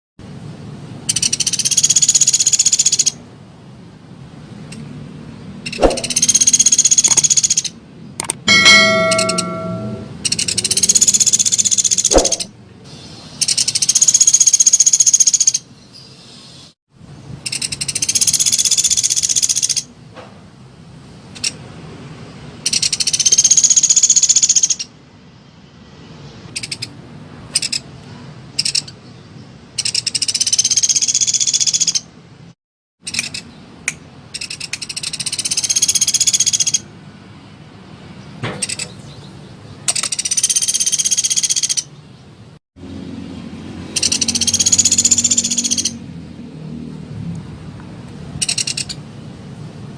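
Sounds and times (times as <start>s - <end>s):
recorded songbird call: 1.1s - 3.2s, 8.5s - 16.7s, 22.6s - 24.9s, 28.5s - 32.1s, 33.0s - 36.9s, 38.2s - 42.2s, 43.9s - 46.0s, 48.4s - 49.0s.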